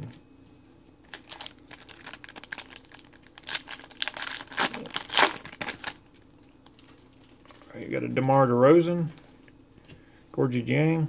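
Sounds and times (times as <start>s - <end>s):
wrapper crinkling and tearing: 1.1s - 8.4s.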